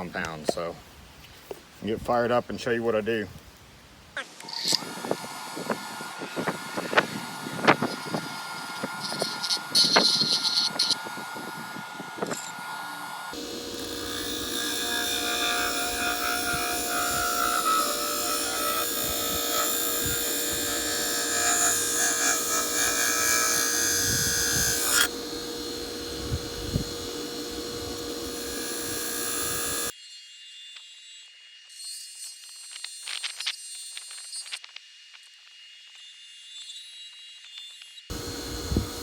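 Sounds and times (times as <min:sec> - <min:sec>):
bench grinder humming: 0:04.5 - 0:29.9, 0:38.1 - 0:39.0.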